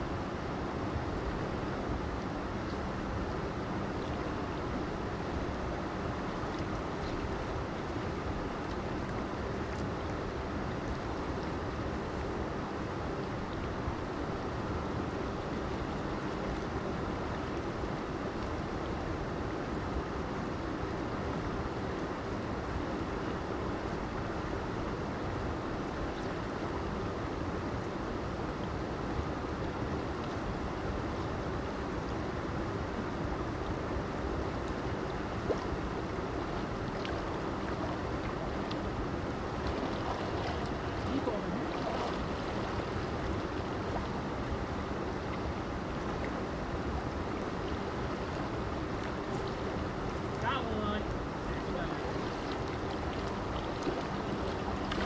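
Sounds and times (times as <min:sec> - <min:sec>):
creek rushing over rocks: 0:35.3 - 0:55.0.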